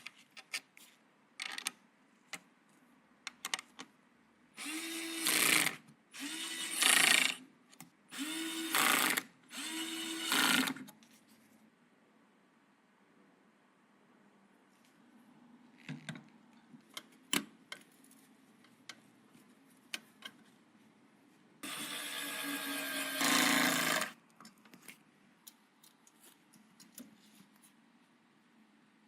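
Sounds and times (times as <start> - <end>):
electric screwdriver running: 21.6 - 24.1.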